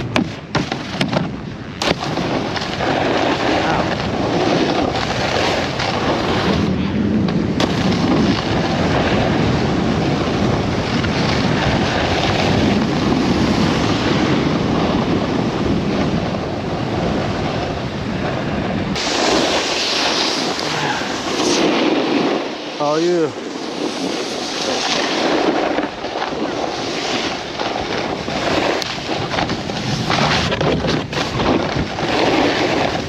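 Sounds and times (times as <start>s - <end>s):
snowboard sliding over snow: 0.0s - 33.0s
wind rushing over microphone: 0.0s - 33.0s.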